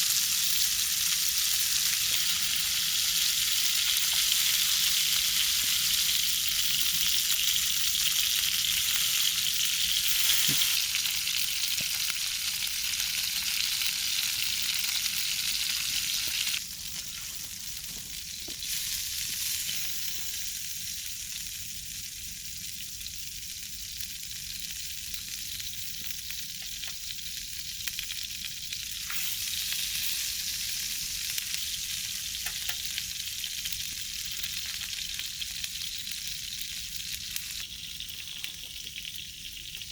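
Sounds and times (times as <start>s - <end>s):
food sizzling in a pan: 0.0s - 39.9s.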